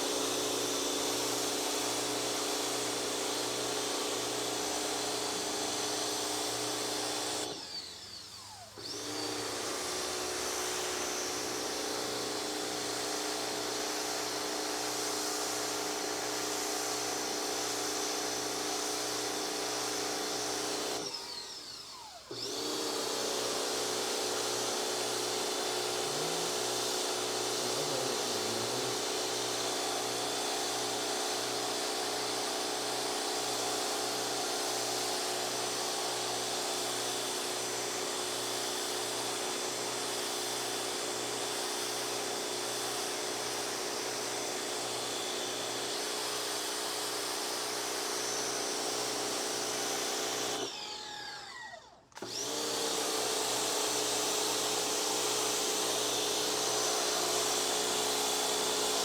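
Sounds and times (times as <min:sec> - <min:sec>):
pressure washer running: 0:00.0 - 0:51.0, 0:52.1 - 0:59.0.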